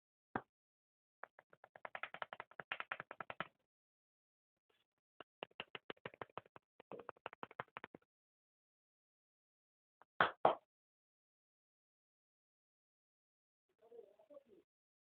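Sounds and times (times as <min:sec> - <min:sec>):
hands slapping a head: 0:01.3 - 0:03.5, 0:05.2 - 0:08.0, 0:10.2 - 0:10.6.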